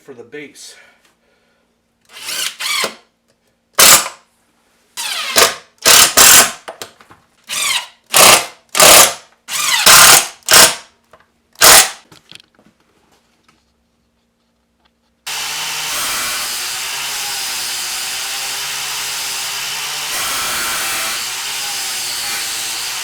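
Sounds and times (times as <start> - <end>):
electric drill bursts: 2.1 - 3.0, 7.5 - 10.8, 11.6 - 12.0, 15.3 - 23.0.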